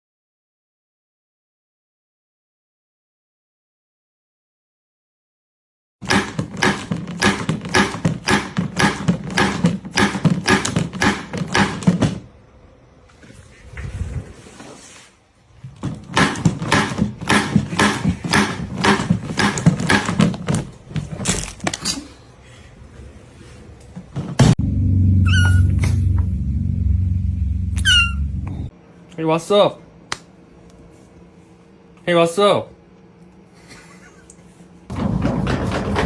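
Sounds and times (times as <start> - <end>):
rapid even knocks: 34.9 - 36.0.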